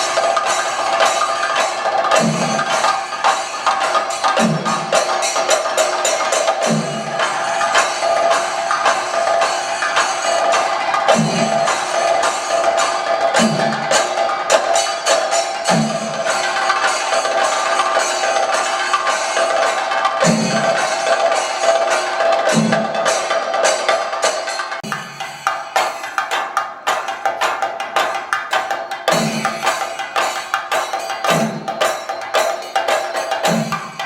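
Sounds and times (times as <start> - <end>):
cymbals ringing: 0.0 - 34.0
rapid drum stick strokes: 24.8 - 34.0.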